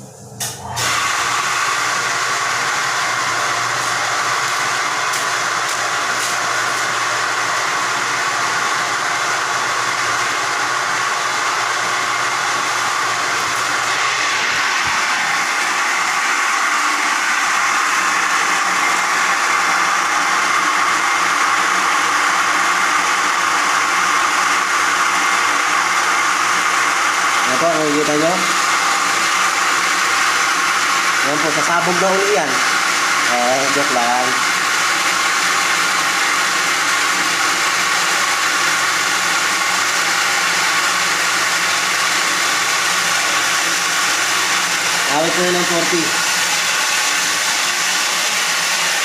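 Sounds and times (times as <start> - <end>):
water pump motor hum: 0.0 - 49.0
water rushing from drain: 26.2 - 49.0.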